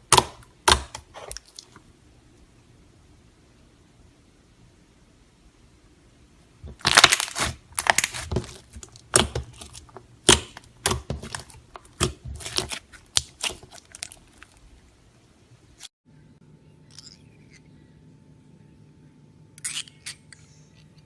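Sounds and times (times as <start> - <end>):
slime crackling and popping: 6.7 - 14.6.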